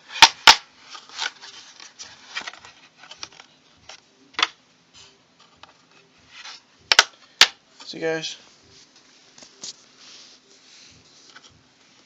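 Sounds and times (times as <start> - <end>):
plastic parts clicking and rustling: 0.1 - 4.6.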